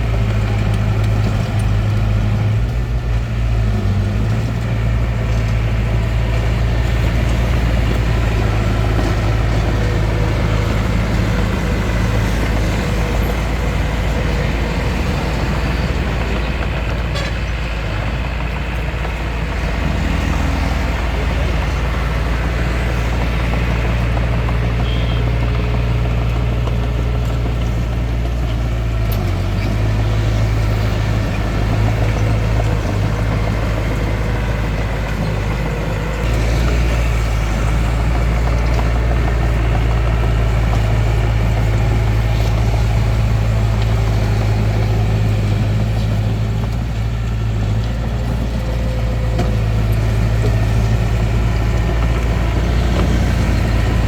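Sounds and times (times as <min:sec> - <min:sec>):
bulldozer diesel engine droning: 0:00.0 - 0:54.0.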